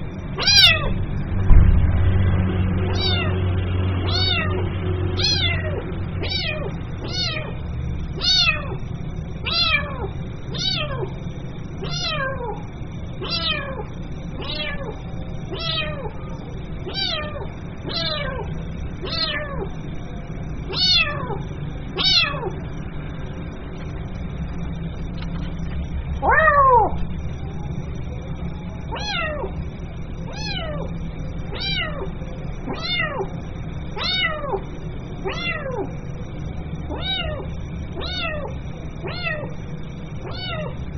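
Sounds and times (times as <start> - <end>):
kitten meowing: 0.4 - 0.9, 2.9 - 3.3, 4.0 - 4.6, 5.2 - 7.6, 8.2 - 8.8, 9.4 - 11.1, 11.8 - 12.6, 13.2 - 16.2, 16.8 - 19.7, 20.7 - 21.4, 22.0 - 22.5, 26.2 - 27.0, 28.9 - 29.5, 30.3 - 30.9, 31.5 - 32.1, 32.7 - 33.3, 34.0 - 34.6, 35.2 - 35.9, 36.9 - 37.4, 38.0 - 39.5, 40.2 - 40.7.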